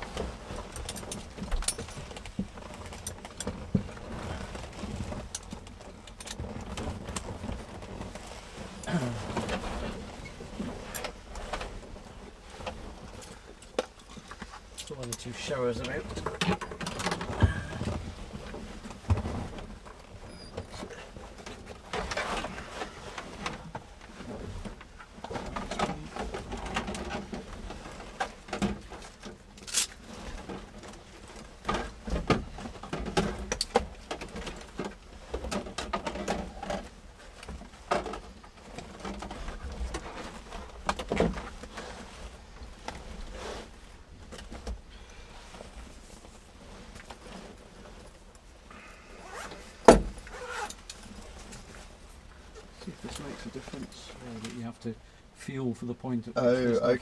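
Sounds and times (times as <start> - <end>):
handling knocks and rustles: 0.0 - 55.0.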